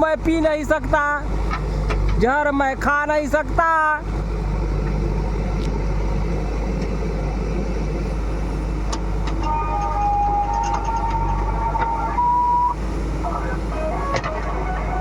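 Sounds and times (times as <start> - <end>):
diesel engine rumbling: 0.0 - 15.0
faint high tone: 9.4 - 12.8.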